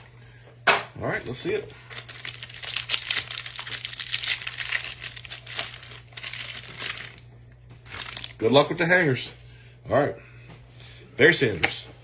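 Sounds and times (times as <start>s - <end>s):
packaging crinkling and tearing: 1.2s - 8.4s.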